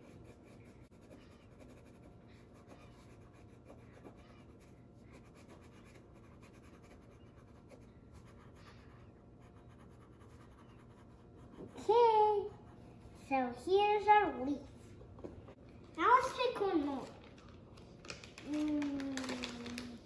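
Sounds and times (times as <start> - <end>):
crayon scratching on paper: 0.0 - 13.4.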